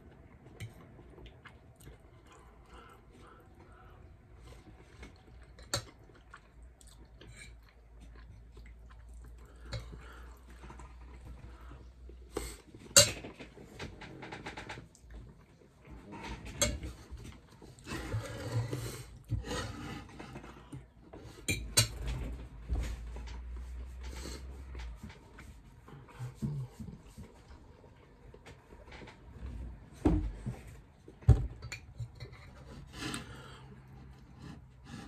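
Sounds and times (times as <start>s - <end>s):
eating and handling noises: 0.0s - 35.0s
rustling and scraping: 10.5s - 35.0s.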